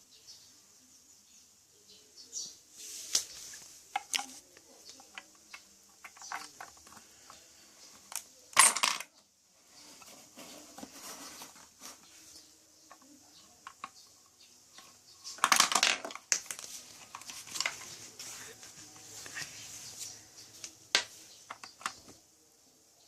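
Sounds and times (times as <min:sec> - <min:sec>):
plastic parts clicking: 0:03.9 - 0:07.4, 0:12.9 - 0:14.1, 0:14.7 - 0:18.0, 0:21.0 - 0:22.2
marbles rattling through machine: 0:08.6 - 0:09.1, 0:15.4 - 0:16.5.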